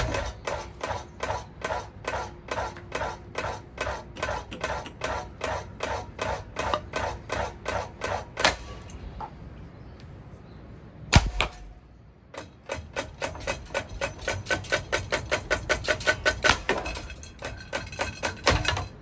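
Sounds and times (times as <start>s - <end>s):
loud metallic bang: 11.1s - 11.8s
ringing metallic clanks: 11.2s - 19.0s.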